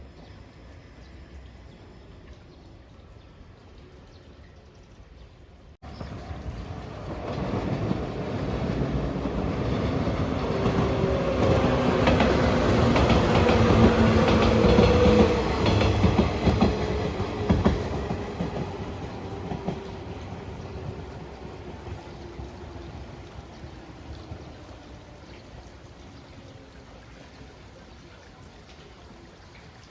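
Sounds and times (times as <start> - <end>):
wheels clacking over rail joints: 5.8 - 23.2
train passing: 5.8 - 27.9.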